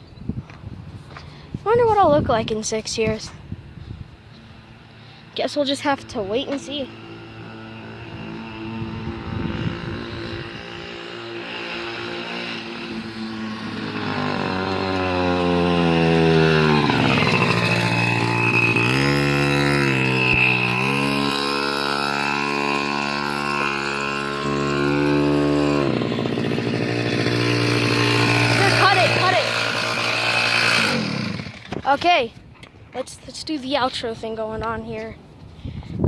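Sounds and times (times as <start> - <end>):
small motorcycle engine revving: 3.6 - 32.0.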